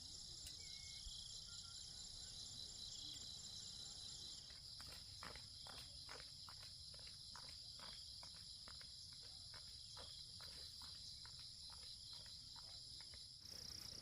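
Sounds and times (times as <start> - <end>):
crickets chirping: 0.0 - 14.0
faint light ticks: 0.4 - 0.6.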